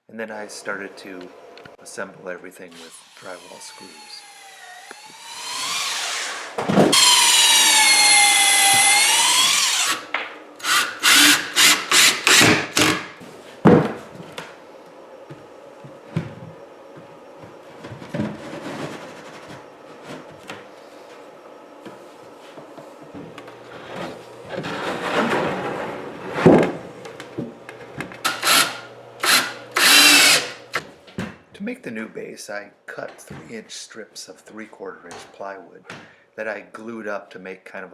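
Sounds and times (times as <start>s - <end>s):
power drill driving screws: 2.8s - 13.1s, 28.2s - 30.8s.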